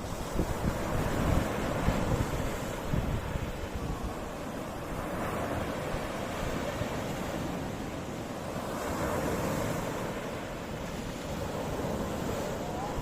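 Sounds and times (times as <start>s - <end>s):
sea waves washing: 0.0s - 13.0s
wind rumbling on microphone: 0.0s - 13.0s.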